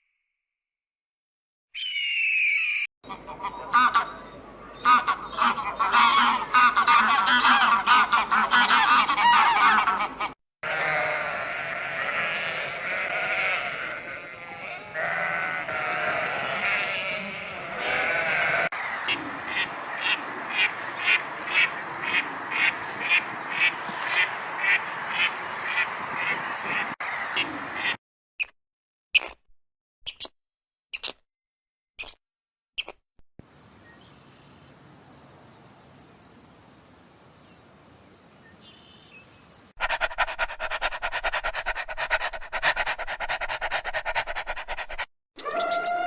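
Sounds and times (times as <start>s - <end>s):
chorus of farm animal calls: 1.8s - 27.9s, 39.8s - 46.0s.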